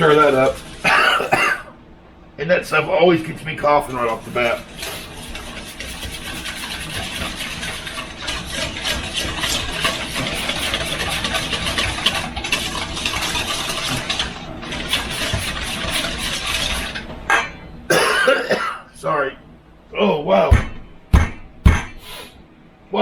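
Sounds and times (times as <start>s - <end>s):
utensil scraping a bowl: 3.8s - 17.6s.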